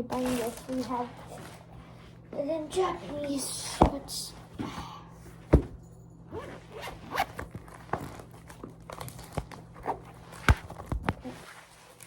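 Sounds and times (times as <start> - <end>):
zipper scraping: 6.3 - 12.0.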